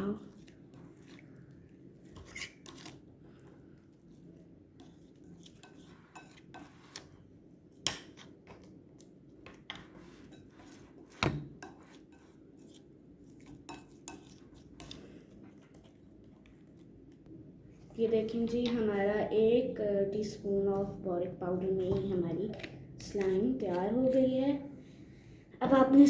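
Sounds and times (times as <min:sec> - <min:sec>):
utensil scraping bowl: 0:00.0 - 0:03.5, 0:04.8 - 0:07.2, 0:09.6 - 0:16.8
utensil stirring slime: 0:00.0 - 0:24.7.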